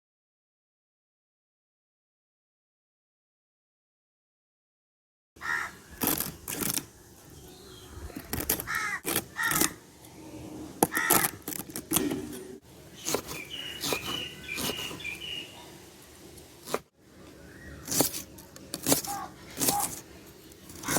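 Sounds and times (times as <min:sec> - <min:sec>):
crows calling: 0:05.4 - 0:06.1, 0:08.2 - 0:09.8, 0:10.8 - 0:11.4, 0:13.4 - 0:15.5, 0:19.0 - 0:19.9.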